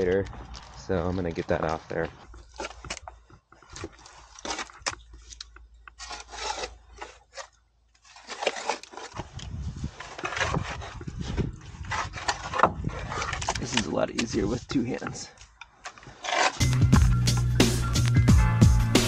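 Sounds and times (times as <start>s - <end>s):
scraping mud off machinery: 0.0s - 15.0s, 15.8s - 17.4s.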